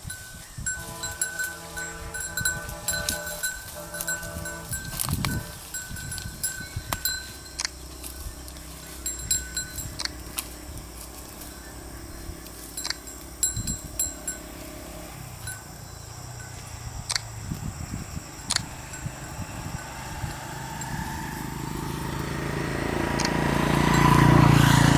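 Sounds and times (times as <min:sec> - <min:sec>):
goat bells tinkling: 0:00.0 - 0:16.8, 0:18.1 - 0:22.3, 0:23.5 - 0:24.7
low steady hum: 0:00.4 - 0:18.4.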